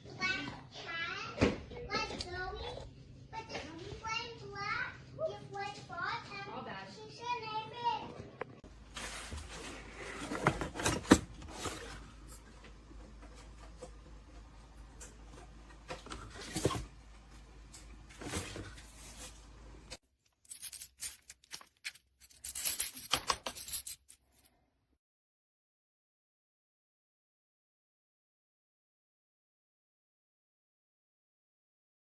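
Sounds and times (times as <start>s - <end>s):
plastic toy pieces clicking: 20.5s - 24.1s.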